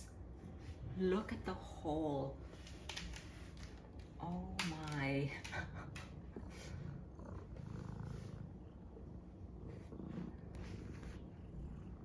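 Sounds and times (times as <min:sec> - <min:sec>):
pet purring: 0:05.9 - 0:12.0.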